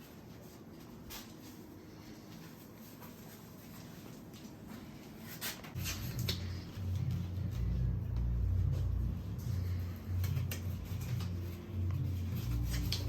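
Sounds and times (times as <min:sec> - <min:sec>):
faint rustling and handling: 0:00.0 - 0:13.0
background music with low bass: 0:05.8 - 0:13.0.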